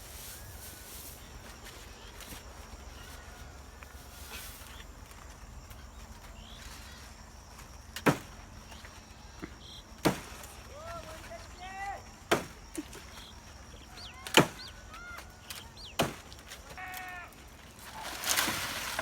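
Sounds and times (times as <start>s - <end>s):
faint bird chirps: 0.0s - 4.9s, 13.0s - 16.0s.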